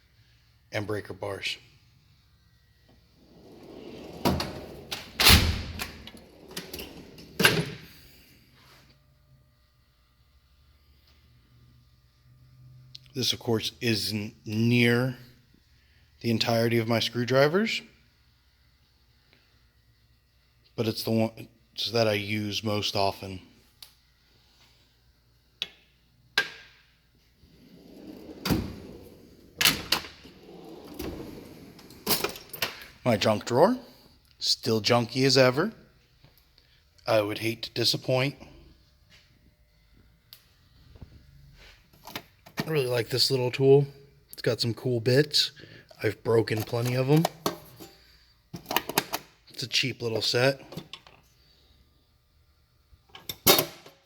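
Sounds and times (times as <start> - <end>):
drawers sliding and banging shut: 3.3 - 7.9, 27.5 - 32.9
drawer heavy clunk: 28.0 - 32.5.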